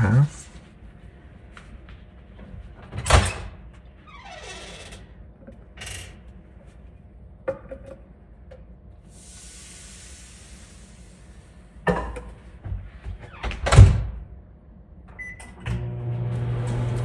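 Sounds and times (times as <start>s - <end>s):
microwave oven humming: 15.0s - 17.0s.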